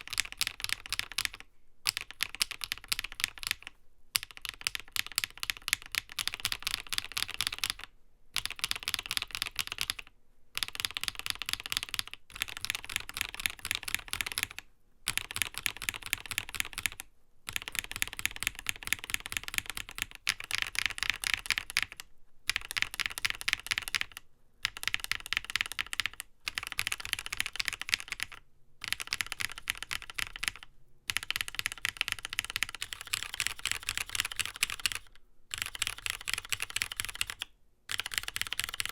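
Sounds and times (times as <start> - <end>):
mechanical keyboard key clacks: 10.6 - 38.9.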